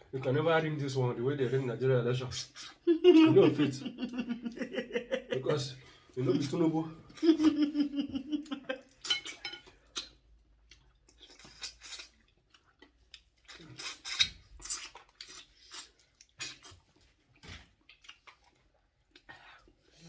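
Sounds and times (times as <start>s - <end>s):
cutlery clinking against bowls: 9.0s - 9.8s.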